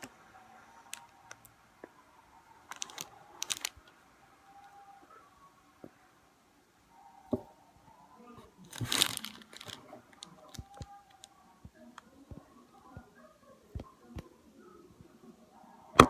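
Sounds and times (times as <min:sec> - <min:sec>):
plastic pencils clicking: 0:02.6 - 0:04.0, 0:08.7 - 0:11.4.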